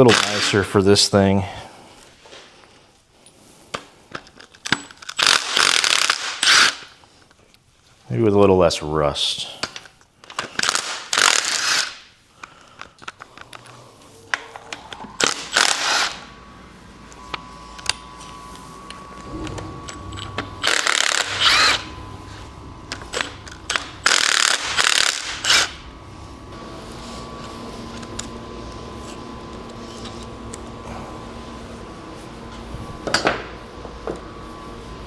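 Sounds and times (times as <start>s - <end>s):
ratchet wrench turning bolts: 19.8s - 21.9s, 22.9s - 25.8s.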